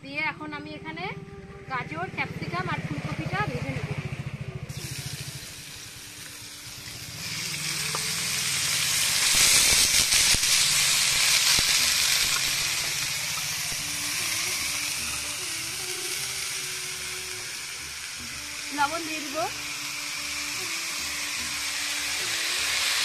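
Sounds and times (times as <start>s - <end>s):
vegetables sizzling in hot oil: 4.7s - 23.0s.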